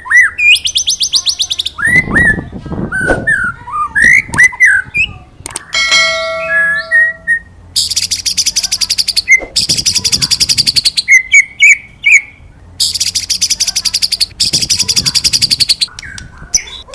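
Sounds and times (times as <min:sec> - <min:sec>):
bird whistles and rattling trills: 0:06.3 - 0:16.8.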